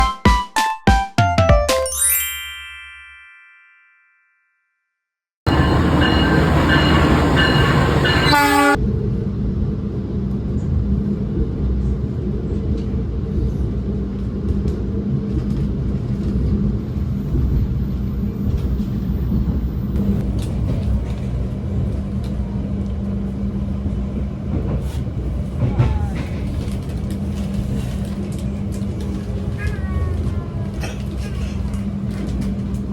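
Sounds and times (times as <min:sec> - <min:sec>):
train rumbling and humming: 0:05.5 - 0:32.9
train horn: 0:08.1 - 0:08.8.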